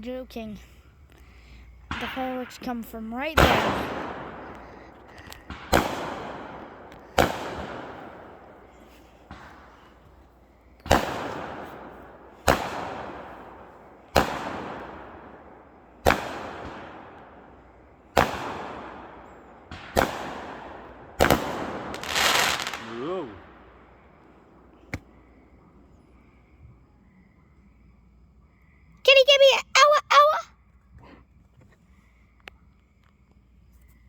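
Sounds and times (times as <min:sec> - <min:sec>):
fireworks bangs echoing: 0:01.6 - 0:25.2
faint firework pop: 0:24.9 - 0:25.2.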